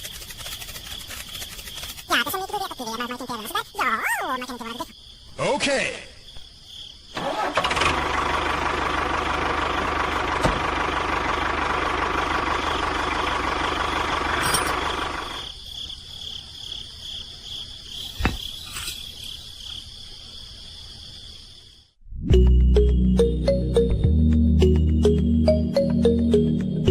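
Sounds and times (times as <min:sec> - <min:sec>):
music: 0:22.1 - 0:26.9.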